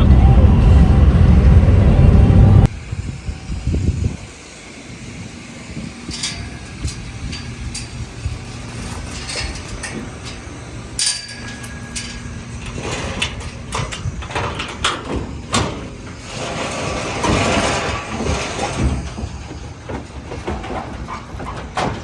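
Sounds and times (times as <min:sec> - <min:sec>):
vehicle engine running in cab: 0:00.0 - 0:17.1
rattles and knocks: 0:05.2 - 0:22.0.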